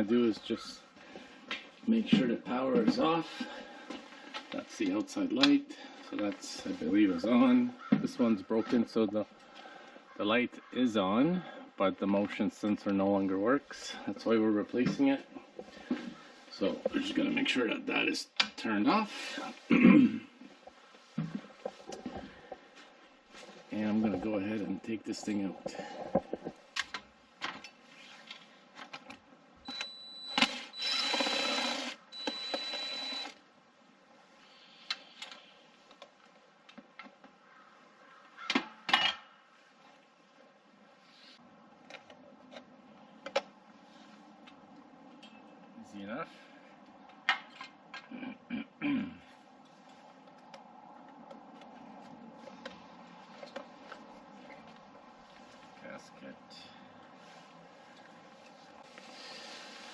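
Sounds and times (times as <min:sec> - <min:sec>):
faint background noise: 0:00.0 - 0:59.9
power drill whining: 0:29.7 - 0:33.4.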